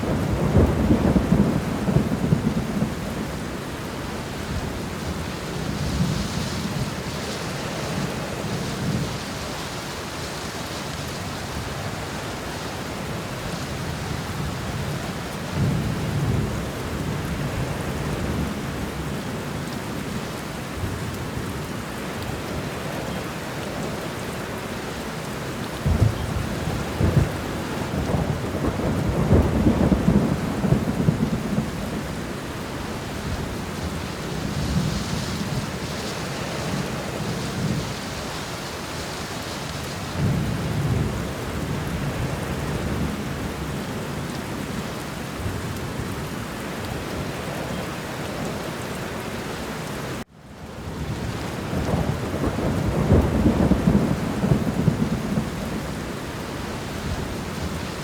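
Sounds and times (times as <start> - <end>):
low rolling thunder: 0.0 - 10.6, 11.2 - 19.4, 25.8 - 47.8, 50.8 - 58.0
steady rain: 0.0 - 58.0.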